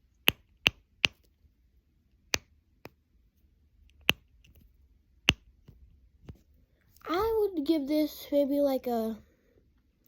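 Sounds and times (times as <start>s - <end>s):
fidget toy popping: 0.2s - 1.3s.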